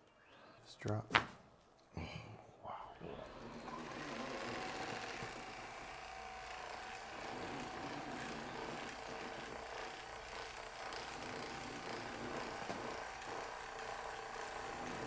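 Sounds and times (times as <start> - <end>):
small motor humming: 3.2 - 15.0.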